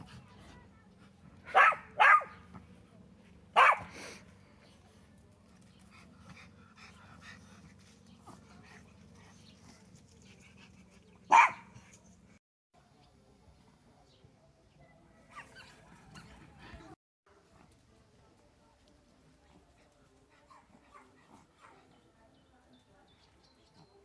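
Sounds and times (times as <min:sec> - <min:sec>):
small dog yapping: 0:01.5 - 0:02.4, 0:03.6 - 0:03.9, 0:11.3 - 0:11.7.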